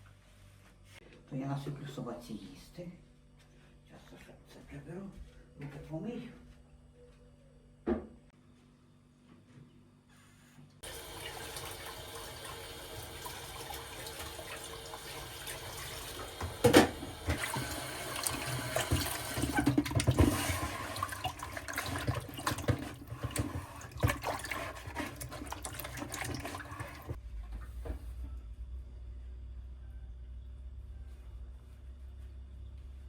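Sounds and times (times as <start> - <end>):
hands washing and splashing: 10.8 - 27.2
tap water running into sink: 10.8 - 27.2.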